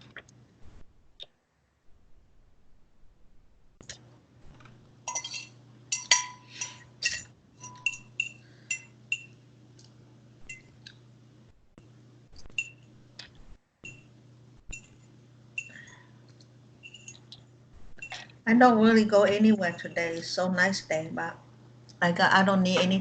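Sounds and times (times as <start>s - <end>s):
steady low hum: 0.0s - 23.0s
cutlery clinking on dishes: 5.1s - 9.3s.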